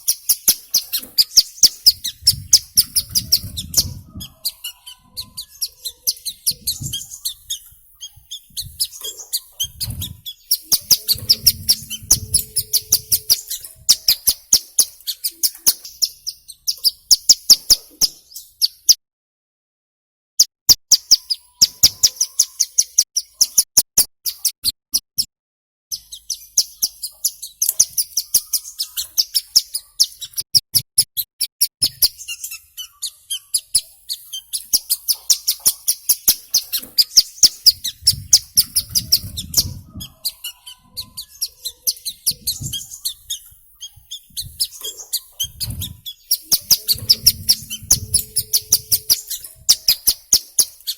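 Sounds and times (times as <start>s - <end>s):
bird calling in sharp chips: 31.7s - 50.9s.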